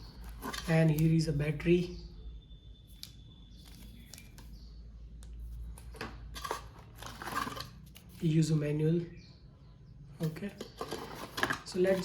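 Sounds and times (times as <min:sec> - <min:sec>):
packaging rustling: 0:05.9 - 0:08.3, 0:10.6 - 0:12.0.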